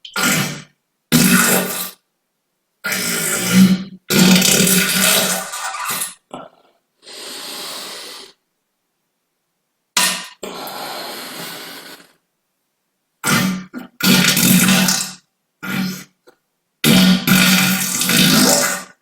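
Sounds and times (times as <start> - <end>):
person farting: 0.0 - 2.0, 2.9 - 6.8, 10.0 - 10.6, 13.2 - 19.0.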